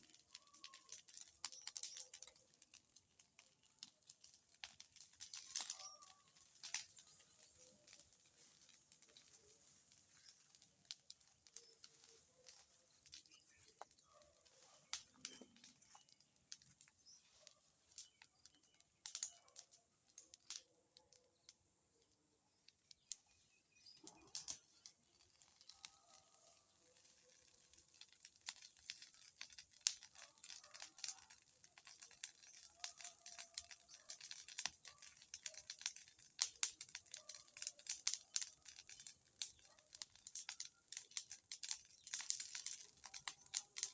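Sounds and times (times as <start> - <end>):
bonfire crackling: 0.0 - 43.9.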